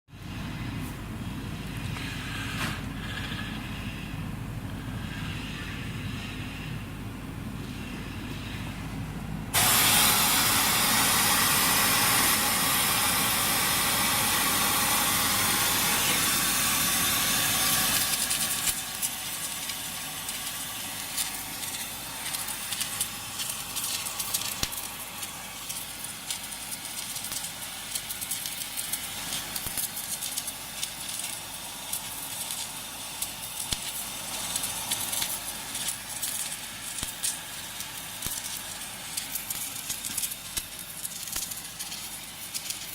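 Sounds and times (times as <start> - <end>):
welding arc hissing and crackling: 9.5 - 42.9.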